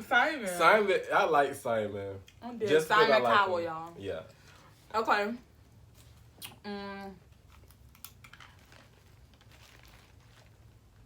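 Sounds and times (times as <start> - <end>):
soft crinkling: 7.2 - 11.0.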